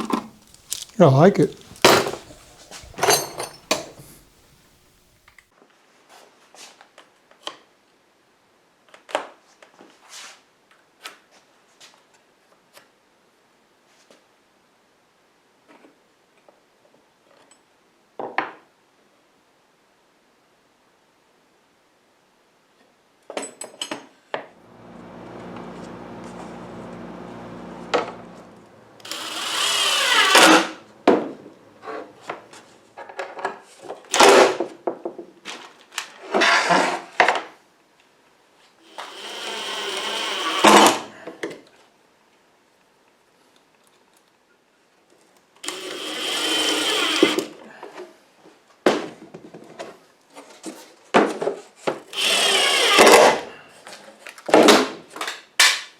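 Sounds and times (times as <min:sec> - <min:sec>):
power tool cutting wood: 0:24.6 - 0:32.9, 0:38.9 - 0:41.2, 0:45.6 - 0:47.5, 0:52.1 - 0:53.4
power tool motor running: 0:24.6 - 0:32.9, 0:38.9 - 0:41.2, 0:45.7 - 0:47.4, 0:52.2 - 0:53.4.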